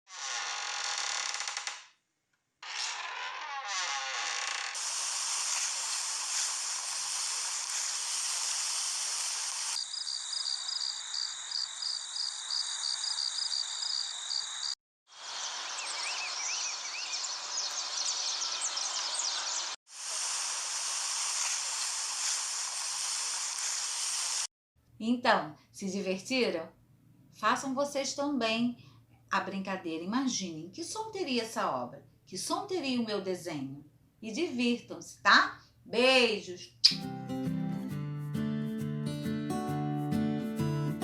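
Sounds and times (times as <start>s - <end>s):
high insect-like chirping: 7.5s - 19.6s
steady hiss: 20.0s - 24.5s.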